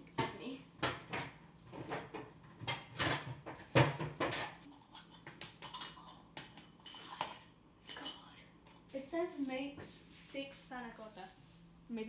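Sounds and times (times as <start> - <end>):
utensils and glasses clinking: 4.6 - 8.4.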